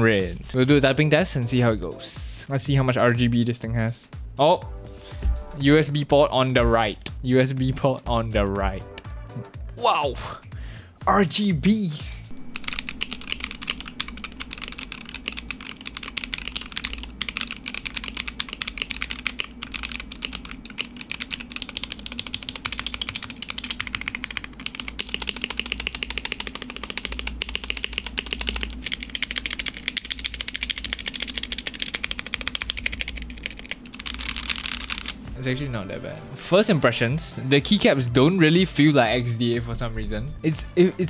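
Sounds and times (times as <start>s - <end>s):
fast typing on mechanical keyboard: 12.3s - 35.2s.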